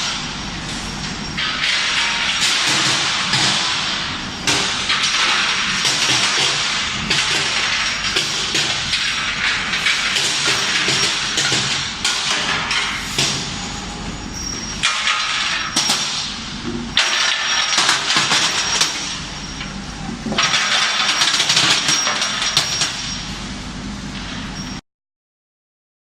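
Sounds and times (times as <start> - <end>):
low machine hum: 0.0 - 17.6
metal parts clattering: 20.3 - 23.2.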